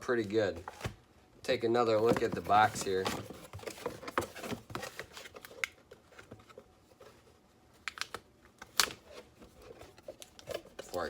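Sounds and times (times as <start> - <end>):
cardboard box taps and rustles: 2.0 - 5.1.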